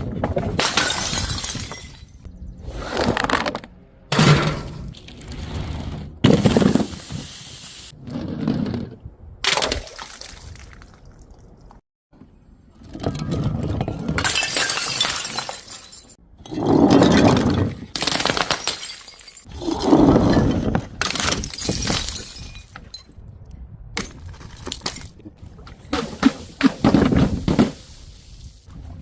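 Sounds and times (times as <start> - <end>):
broken glass crunching and clinking: 0.6 - 2.2, 14.2 - 16.2, 17.0 - 19.5, 21.0 - 23.1
glass bottles shattering: 0.6 - 2.2, 14.2 - 16.2, 16.9 - 19.5, 21.0 - 23.1.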